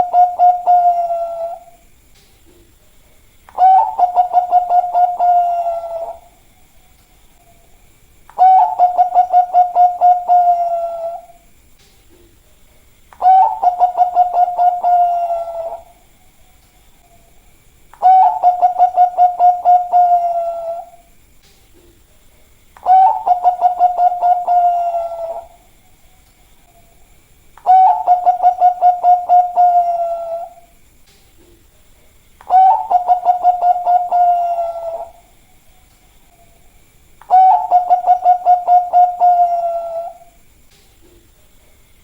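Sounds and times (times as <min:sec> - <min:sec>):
dove cooing: 0:00.0 - 0:01.8, 0:03.5 - 0:06.4, 0:08.4 - 0:11.4, 0:13.2 - 0:16.0, 0:18.0 - 0:21.1, 0:22.8 - 0:25.7, 0:27.6 - 0:30.7, 0:32.4 - 0:35.4, 0:37.2 - 0:40.4.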